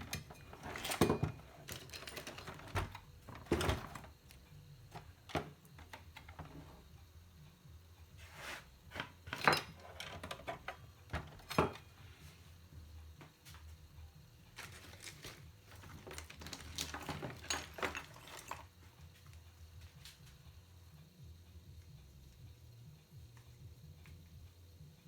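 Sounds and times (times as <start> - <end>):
small tools clicking and knocking: 0.0 - 6.8, 8.9 - 12.0, 14.5 - 18.9
steady low hum: 0.0 - 9.6, 10.5 - 16.6, 18.6 - 25.0.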